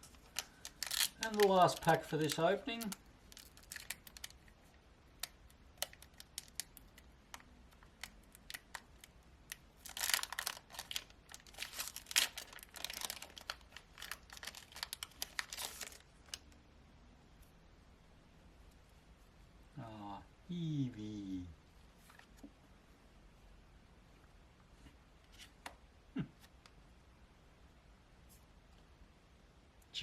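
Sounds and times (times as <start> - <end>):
foil wrapper crinkling: 0.0 - 4.6, 5.2 - 16.5.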